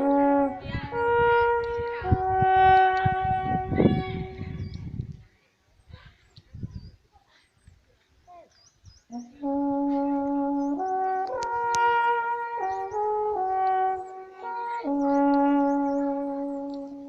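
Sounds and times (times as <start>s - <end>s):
brass instrument long held notes: 0.0s - 4.8s, 9.1s - 17.0s.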